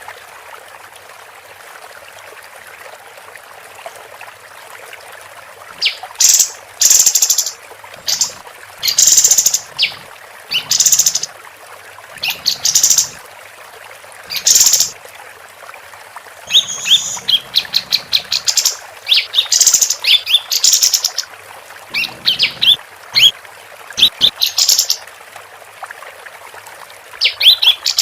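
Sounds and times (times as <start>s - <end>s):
bird singing buzzy chattering: 16.5s - 21.2s, 21.9s - 23.3s.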